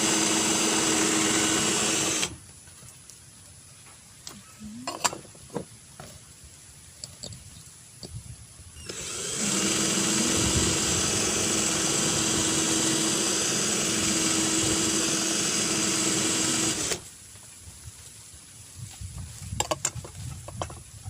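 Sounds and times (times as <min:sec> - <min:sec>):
electric drill boring through plastic: 0:00.0 - 0:02.4, 0:08.8 - 0:17.0.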